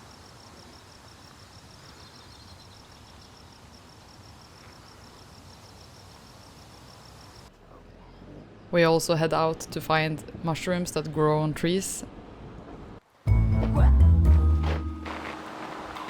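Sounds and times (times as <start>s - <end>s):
insect chirping: 0.0s - 7.5s
faint outdoor background noise: 0.0s - 16.0s.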